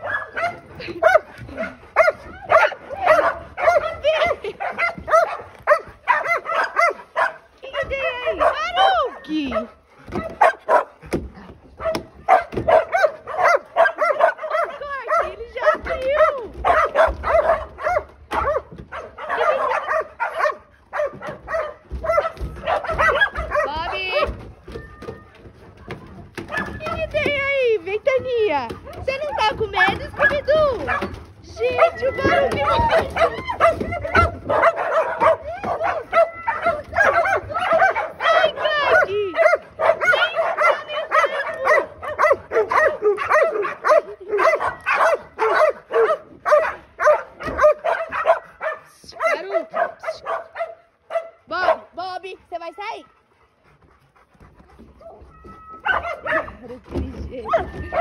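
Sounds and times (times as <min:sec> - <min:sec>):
dogs whining and yipping: 0:11.7 - 0:27.5, 0:28.6 - 0:51.4, 0:53.1 - 0:58.0.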